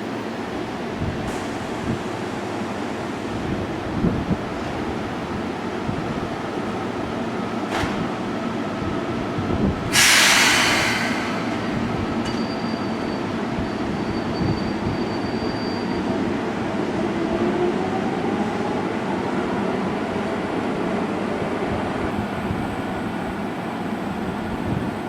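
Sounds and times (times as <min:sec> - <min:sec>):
train wheels rumbling: 0:03.1 - 0:15.4.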